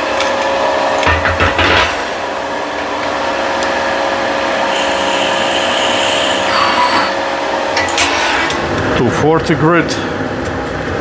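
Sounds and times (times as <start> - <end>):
wood lathe running: 3.5 - 7.6
high hiss: 4.6 - 7.3
drill bit boring into wood: 4.7 - 7.1.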